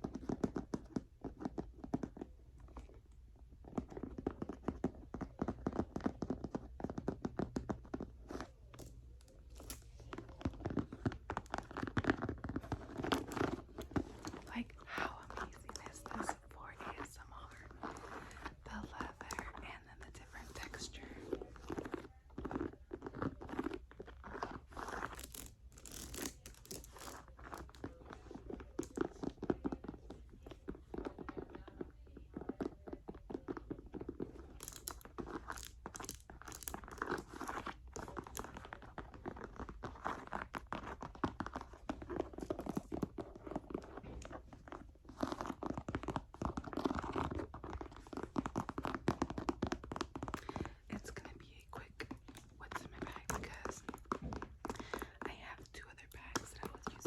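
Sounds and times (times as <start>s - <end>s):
fingers tapping on leather bag: 0.0s - 3.0s, 3.6s - 14.6s, 20.4s - 50.8s.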